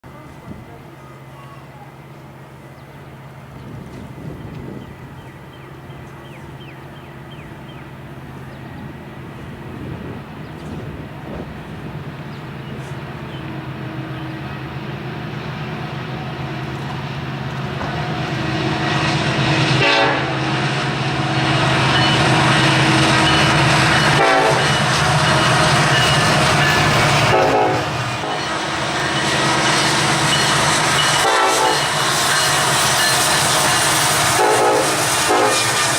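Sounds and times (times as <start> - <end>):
diesel locomotive engine: 0.0 - 35.9
locomotive air horn blasts: 19.6 - 21.8, 23.9 - 25.3, 27.1 - 28.4, 31.1 - 32.0, 33.8 - 35.9.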